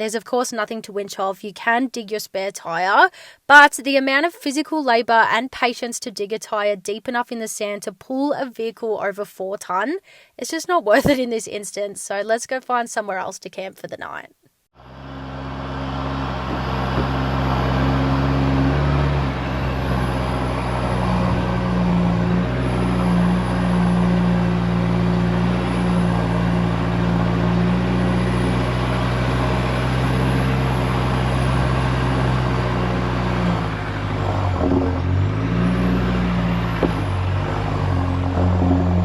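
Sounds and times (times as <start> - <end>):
vehicle engine droning: 14.8 - 39.0.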